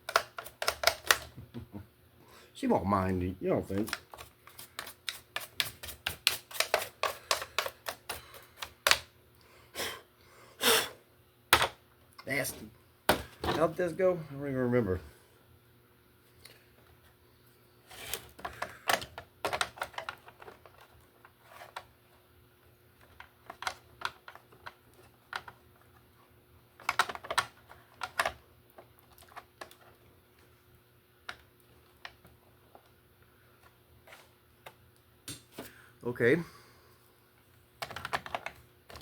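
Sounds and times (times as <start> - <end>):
hard plastic parts clicking: 0.0 - 1.4, 26.8 - 28.4.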